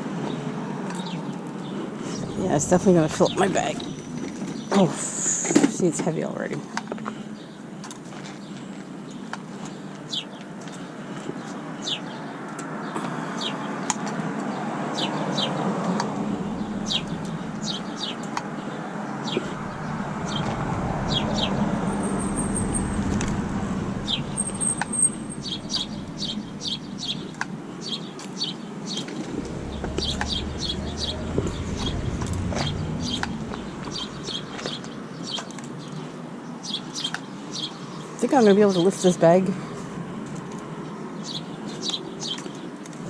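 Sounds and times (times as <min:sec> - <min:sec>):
road traffic cars passing: 0:00.0 - 0:05.0, 0:05.7 - 0:43.0
small birds chirping: 0:00.3 - 0:39.3, 0:40.8 - 0:43.0.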